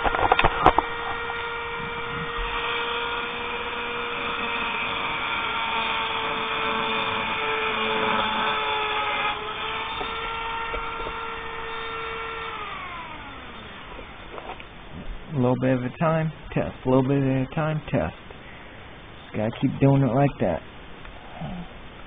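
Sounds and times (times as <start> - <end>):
rotary tool grinding: 0.0 - 14.7.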